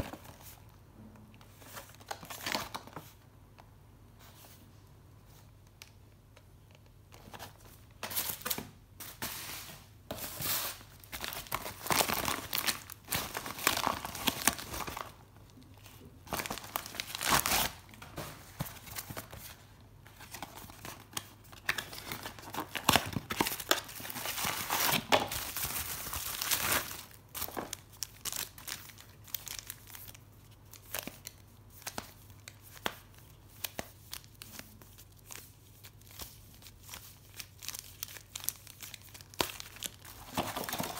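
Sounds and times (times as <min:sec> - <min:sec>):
packaging crinkling and tearing: 0:10.4 - 0:40.9.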